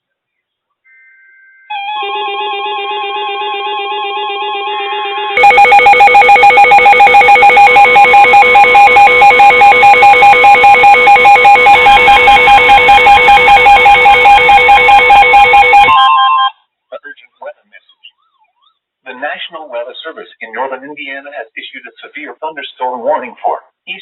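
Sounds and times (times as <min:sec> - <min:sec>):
long steady alarm tone: 0:01.7 - 0:16.5
warbling alert tone: 0:05.4 - 0:16.0
loud pulsing alarms: 0:05.4 - 0:16.2.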